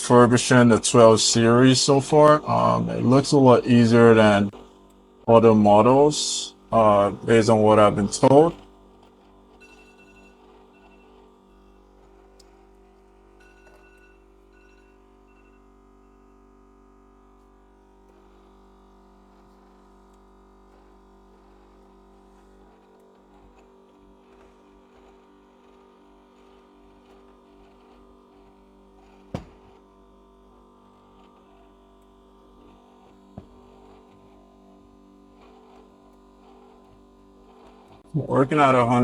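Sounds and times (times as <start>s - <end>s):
faint steady hum: 0.0s - 19.8s.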